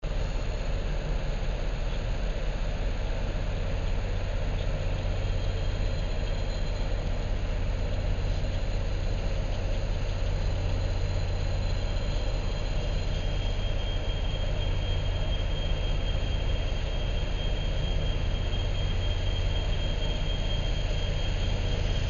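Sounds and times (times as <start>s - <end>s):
faint high whine: 0.0s - 22.0s
train rumbling past: 0.0s - 22.0s.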